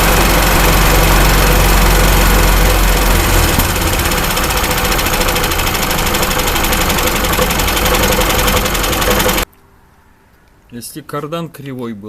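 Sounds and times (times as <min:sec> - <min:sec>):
rapid rhythmic knocking: 0:00.0 - 0:09.4
vehicle engine running: 0:00.0 - 0:09.4.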